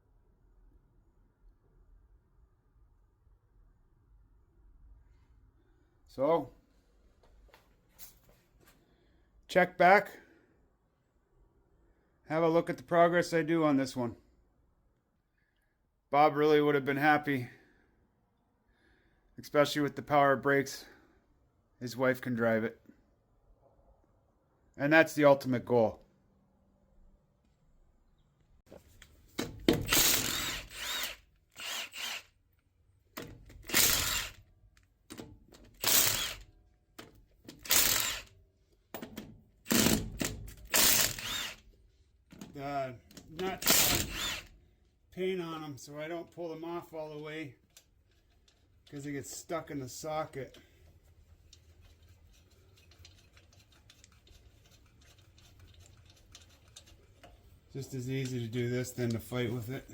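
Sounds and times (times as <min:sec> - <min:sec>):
impact wrench bursts: 0:29.4 - 0:32.4, 0:33.2 - 0:34.4, 0:35.1 - 0:38.4, 0:39.0 - 0:41.8, 0:43.2 - 0:44.6.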